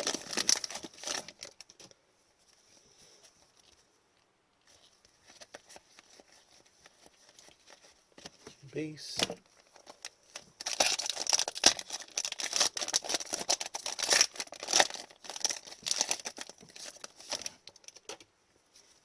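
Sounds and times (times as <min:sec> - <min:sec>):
wrapper crinkling and tearing: 0:00.0 - 0:02.0, 0:09.5 - 0:18.2
cards rustling: 0:04.7 - 0:18.2.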